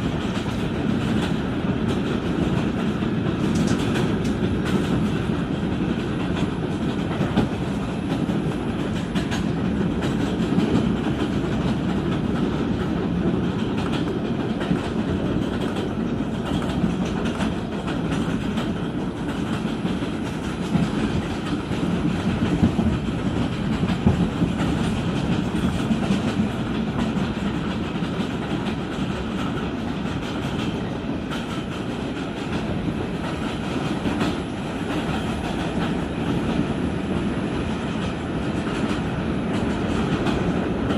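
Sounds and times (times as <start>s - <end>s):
rail joint clicks: 0.0s - 40.9s
subway wheels rumbling on track: 0.0s - 40.9s.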